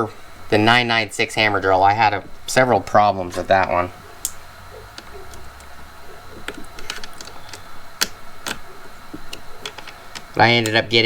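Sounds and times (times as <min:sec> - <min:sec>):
faint steady hum: 0:00.0 - 0:11.0
light clicks and taps of parts: 0:06.4 - 0:10.8.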